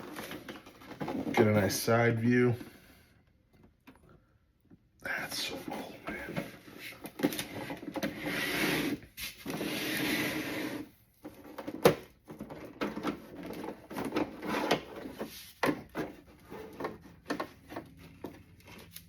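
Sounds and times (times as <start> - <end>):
toy scraping: 7.2 - 11.0.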